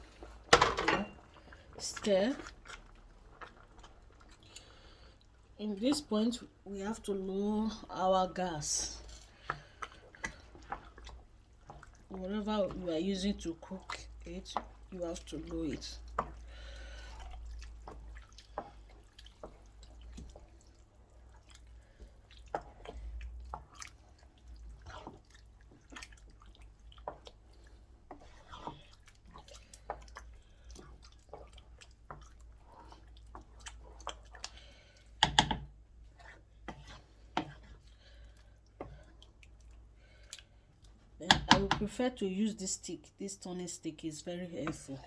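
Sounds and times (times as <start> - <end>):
pot of rice bubbling: 0.0 - 45.0.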